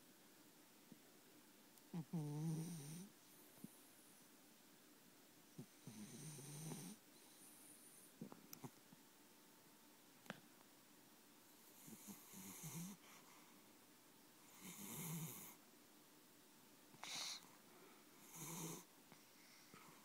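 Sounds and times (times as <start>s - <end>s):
cat snoring faintly: 1.9s - 3.8s, 5.6s - 8.7s, 11.6s - 13.4s, 14.5s - 15.6s, 18.2s - 20.0s.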